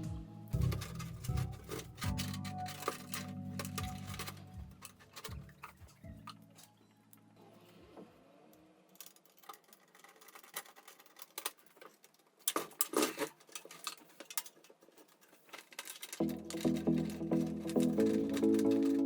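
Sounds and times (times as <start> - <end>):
music: 0.0 - 8.0, 16.2 - 19.0
clatter: 8.9 - 19.0.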